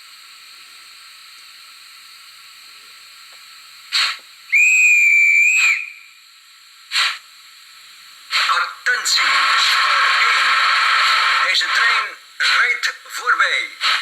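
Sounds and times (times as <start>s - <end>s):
steam hiss bursts: 3.6s - 14.0s
steam whistle: 4.0s - 6.2s.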